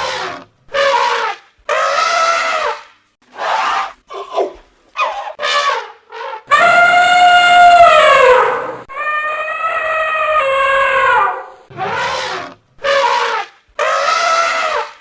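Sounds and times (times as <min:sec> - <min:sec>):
elephant trumpeting: 0:05.5 - 0:14.8.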